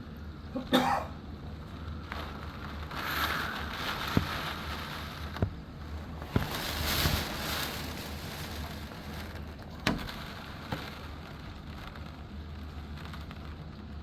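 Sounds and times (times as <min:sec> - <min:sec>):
heavy rain: 0:00.1 - 0:14.0
hurricane-force wind: 0:01.4 - 0:14.0.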